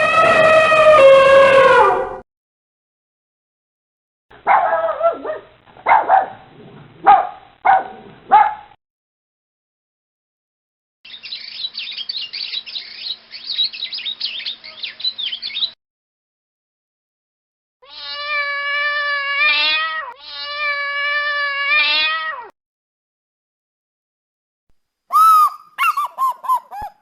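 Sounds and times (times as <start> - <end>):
cat meowing: 17.8 - 22.5.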